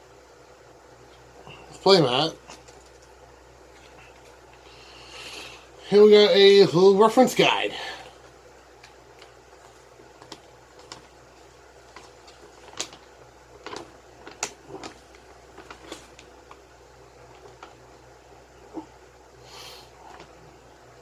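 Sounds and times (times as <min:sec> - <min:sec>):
paper and card rustling: 0:09.2 - 0:16.6.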